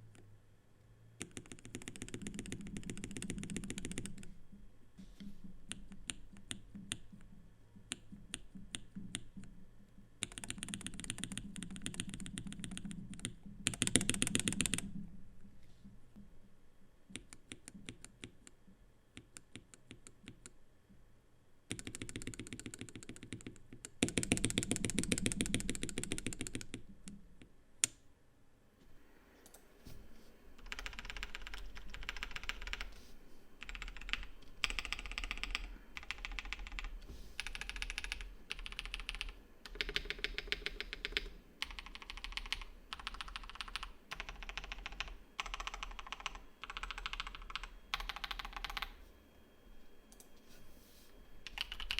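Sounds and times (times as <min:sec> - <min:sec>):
mechanical keyboard typing: 0:01.2 - 0:04.3, 0:10.2 - 0:14.9, 0:21.7 - 0:26.9, 0:30.6 - 0:32.9, 0:33.6 - 0:49.0, 0:51.4 - 0:51.9.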